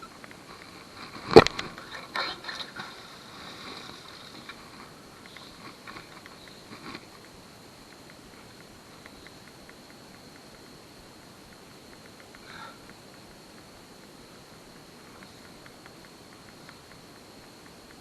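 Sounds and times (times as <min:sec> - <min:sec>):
light clicks and scraping: 0:00.0 - 0:10.4.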